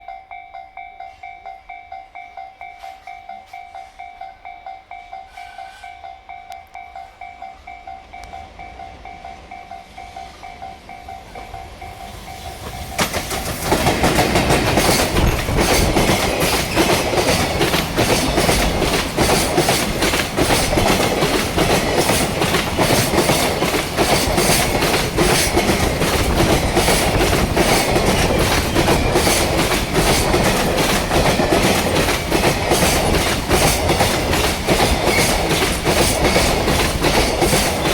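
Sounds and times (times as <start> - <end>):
level crossing warning bell: 0.0 - 37.9
train wheels clattering over rail joints: 12.5 - 37.9.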